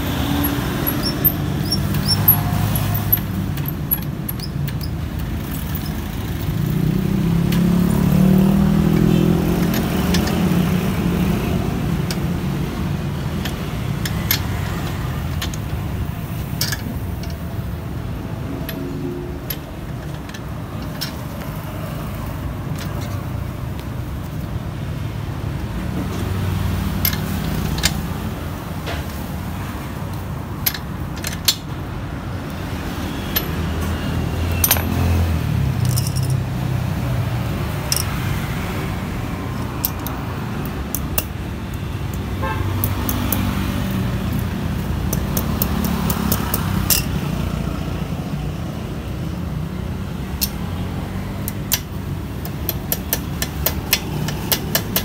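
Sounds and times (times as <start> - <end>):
road traffic rumble: 0.0 - 55.0
sharp clicks and knocks: 0.1 - 8.1, 8.7 - 22.0, 22.6 - 24.5, 25.9 - 29.4, 30.0 - 31.9, 32.5 - 36.5, 39.5 - 47.2, 51.4 - 55.0.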